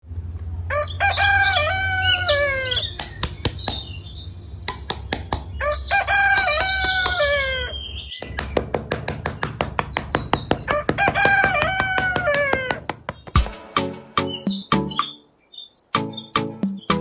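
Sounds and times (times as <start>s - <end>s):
rooster crowing: 0.7s - 3.0s, 5.6s - 7.8s, 10.7s - 12.9s
sharp clicks: 2.8s - 7.6s.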